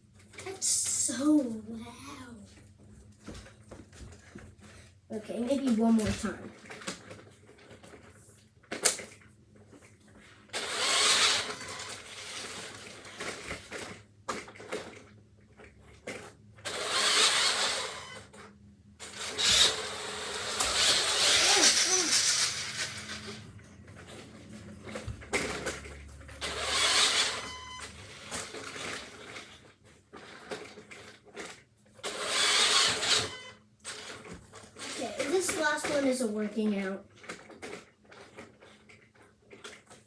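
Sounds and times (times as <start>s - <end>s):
toy car motor whirring: 10.5s - 14.0s, 16.6s - 36.3s.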